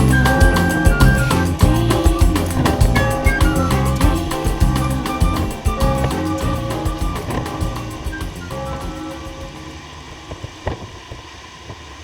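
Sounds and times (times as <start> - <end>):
background music: 0.0 - 10.0.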